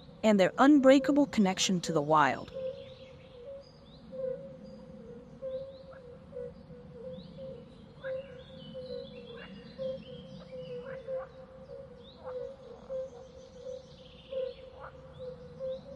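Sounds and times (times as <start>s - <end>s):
birds chirping: 0.3s - 3.8s.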